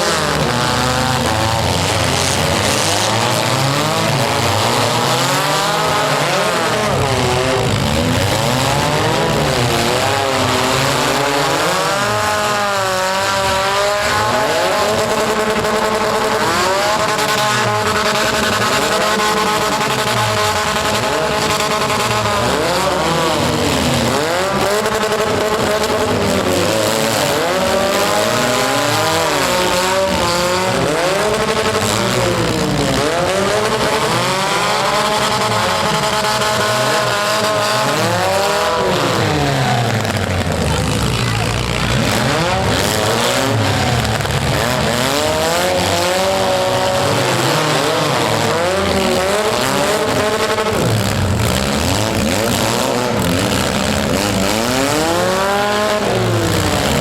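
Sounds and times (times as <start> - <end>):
car engines revving: 0.0 - 57.0.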